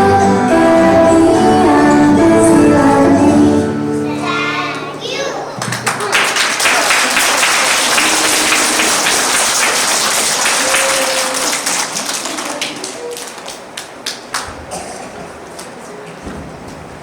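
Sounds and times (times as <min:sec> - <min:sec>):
audience applauding: 0:05.6 - 0:14.7.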